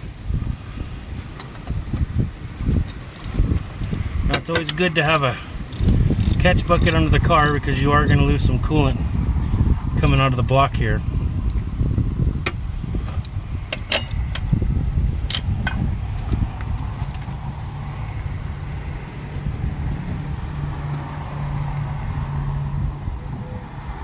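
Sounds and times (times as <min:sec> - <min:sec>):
hand tools clinking on metal: 0:02.9 - 0:08.2.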